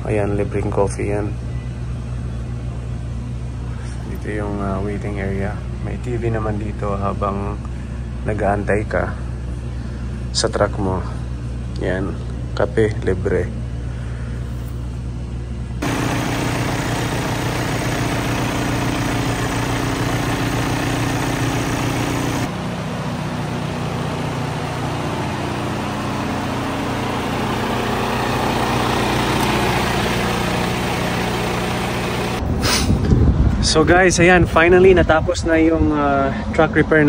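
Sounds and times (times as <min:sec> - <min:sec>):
heavy truck engine idling: 0:15.8 - 0:32.4.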